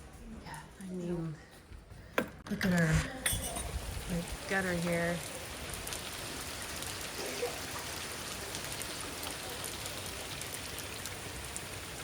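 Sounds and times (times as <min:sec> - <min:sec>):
heavy rain falling: 0:03.7 - 0:12.0.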